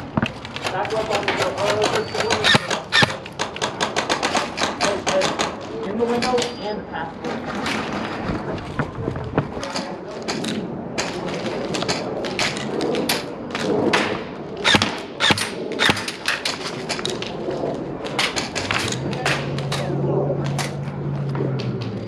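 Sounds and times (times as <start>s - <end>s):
sharp clicks and thuds: 0.0s - 5.8s, 14.7s - 17.3s
noisy background: 0.0s - 22.0s.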